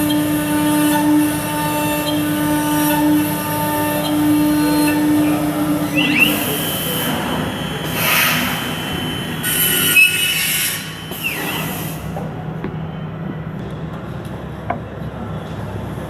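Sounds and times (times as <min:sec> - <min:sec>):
machine spindle whine: 0:00.0 - 0:13.1
bursts of hissing: 0:06.0 - 0:12.1.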